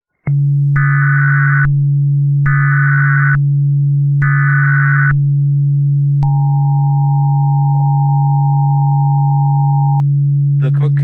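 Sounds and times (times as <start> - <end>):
steady low hum: 0.3 - 11.0
two-note attention tone: 6.2 - 10.1.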